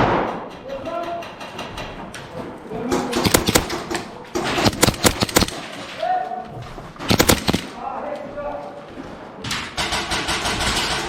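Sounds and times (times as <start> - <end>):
airsoft pistols firing: 3.1 - 5.8, 7.0 - 7.8.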